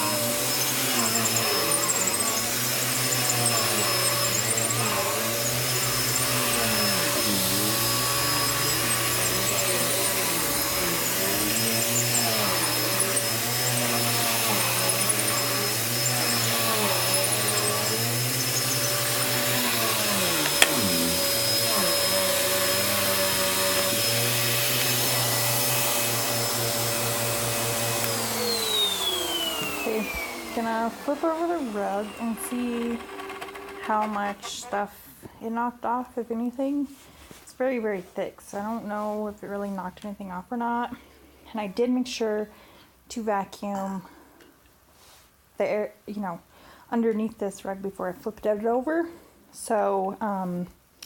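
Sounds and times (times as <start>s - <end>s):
motor winding down: 0.0s - 34.8s
vacuum cleaner running: 0.0s - 34.9s.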